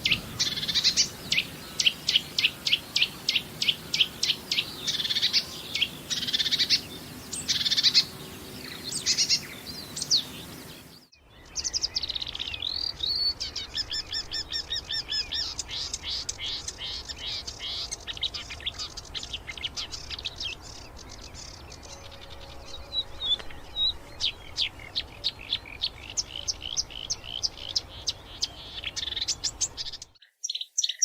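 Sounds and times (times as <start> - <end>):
warbler singing: 0.0 - 31.0.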